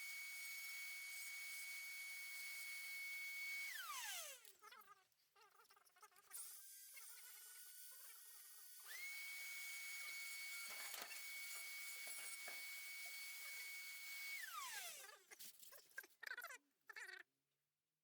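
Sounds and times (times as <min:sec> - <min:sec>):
rotary tool high whine: 0:00.0 - 0:04.5, 0:06.4 - 0:15.1.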